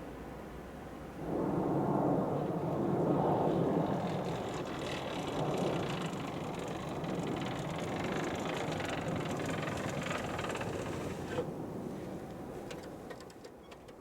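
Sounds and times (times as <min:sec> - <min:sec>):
snow blower engine running: 0:04.2 - 0:11.4.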